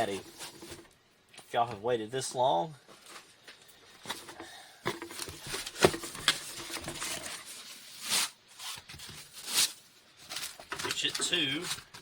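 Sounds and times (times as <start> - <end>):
cardboard packaging rustling: 0.0 - 0.9, 4.0 - 12.0.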